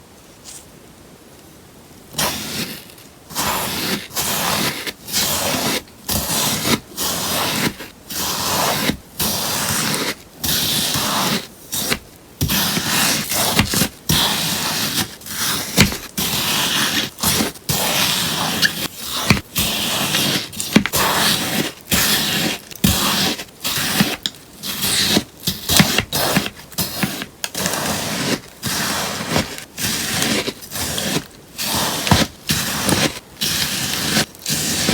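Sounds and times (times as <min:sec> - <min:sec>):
crisp crunching slime cuts: 0:11.0 - 0:34.9.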